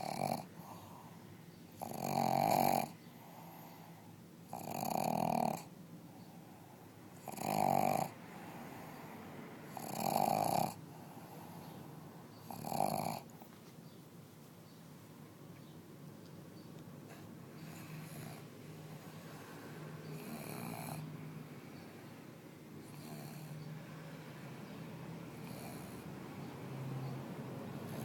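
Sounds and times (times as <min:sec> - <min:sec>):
dog snoring loudly: 0:00.0 - 0:01.0, 0:01.7 - 0:03.8, 0:04.5 - 0:05.7, 0:07.1 - 0:09.0, 0:09.6 - 0:11.6, 0:12.4 - 0:13.3, 0:17.6 - 0:18.5, 0:20.0 - 0:21.1, 0:22.8 - 0:23.7, 0:25.2 - 0:26.1, 0:27.8 - 0:28.0.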